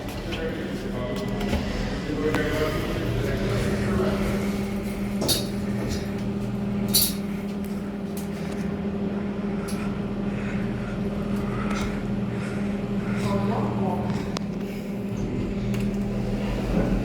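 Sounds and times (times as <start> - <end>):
lift machinery humming: 0.0 - 17.0.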